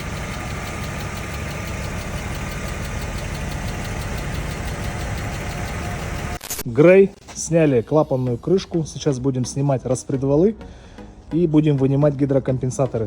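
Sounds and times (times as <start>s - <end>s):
car engine idling: 0.0s - 6.4s
hydraulic lifters ticking: 0.0s - 6.4s.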